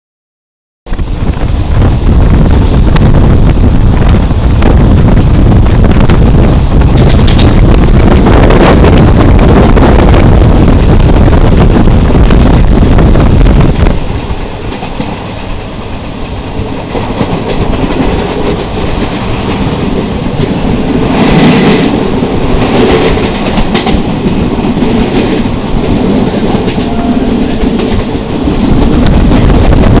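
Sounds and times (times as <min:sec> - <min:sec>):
train wheels rumbling on rails: 0:00.9 - 0:30.0
wind buffeting microphone: 0:00.9 - 0:30.0.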